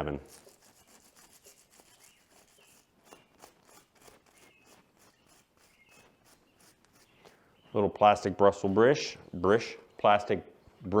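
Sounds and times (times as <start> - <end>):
brush scrubbing metal: 0.0 - 7.3
faint birds chirping: 0.0 - 11.0.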